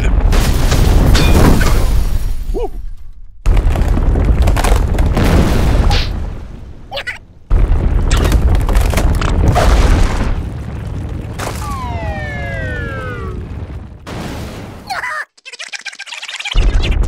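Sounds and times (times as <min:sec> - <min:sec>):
low rumbling boom: 0:03.4 - 0:14.6.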